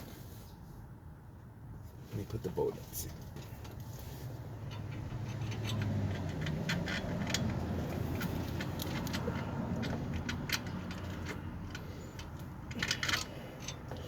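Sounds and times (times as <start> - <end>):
metallic clicks and scrapes: 3.1 - 14.0.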